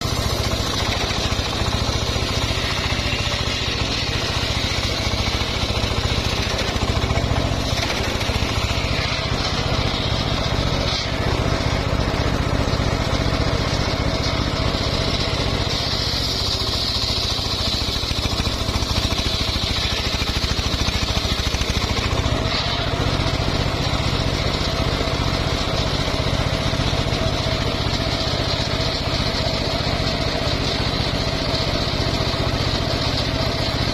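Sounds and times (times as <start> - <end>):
high saw whine: 0.0 - 25.5
sawmill engine running: 0.0 - 33.9.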